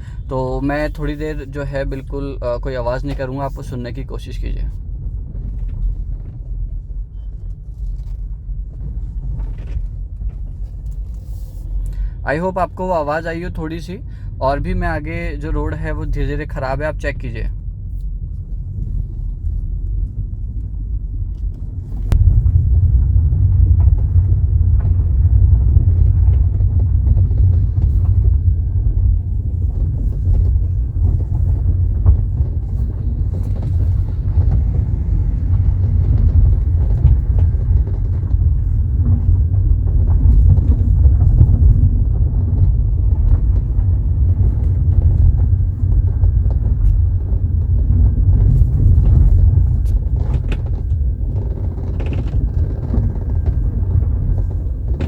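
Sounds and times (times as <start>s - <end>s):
road and tyre rumble: 17.2s - 55.0s
car door clicks and creaks: 48.8s - 55.0s.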